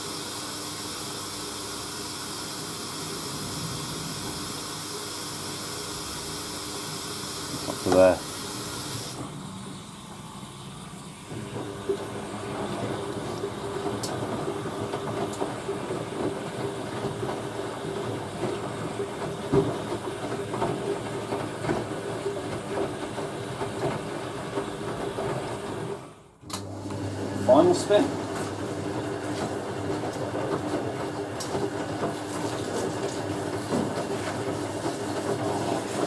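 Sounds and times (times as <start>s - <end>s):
washing machine humming: 0.0s - 36.0s.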